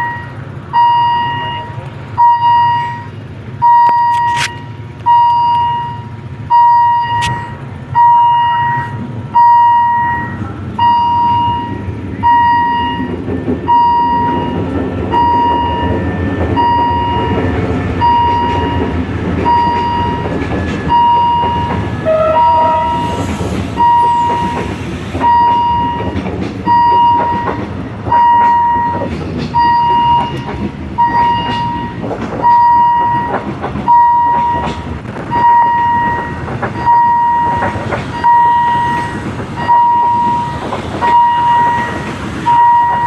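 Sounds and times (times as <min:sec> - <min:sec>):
level crossing bell ringing: 0:00.0 - 0:14.6, 0:25.2 - 0:34.7, 0:35.3 - 0:43.0
train rumble: 0:00.0 - 0:43.0.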